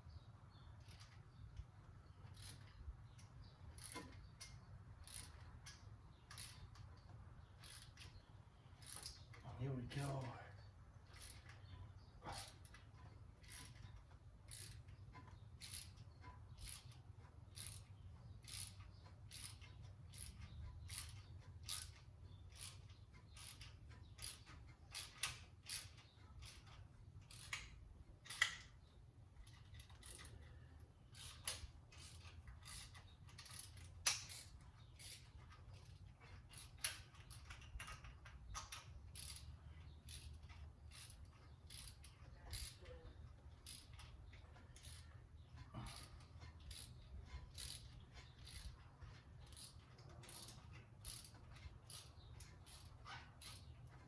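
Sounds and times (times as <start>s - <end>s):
short metal clicks: 0.8s - 54.0s.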